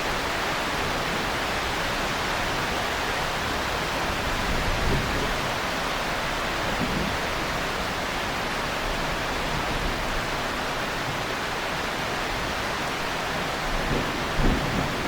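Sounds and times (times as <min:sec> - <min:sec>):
heavy rain: 0:00.0 - 0:15.0
thunder rumbling: 0:13.6 - 0:15.0.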